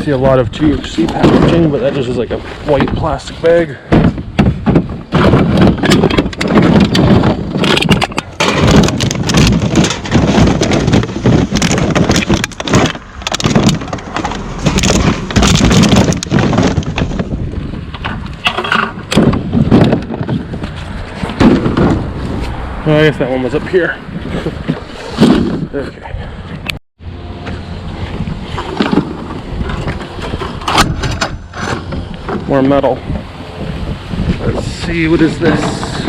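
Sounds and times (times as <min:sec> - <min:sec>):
items knocking: 0:00.7 - 0:03.2, 0:03.9 - 0:22.2, 0:28.5 - 0:32.8.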